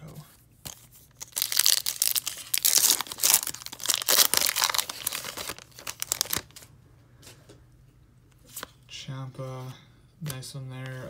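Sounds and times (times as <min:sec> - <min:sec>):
wrapper crinkling and tearing: 0:01.1 - 0:06.7.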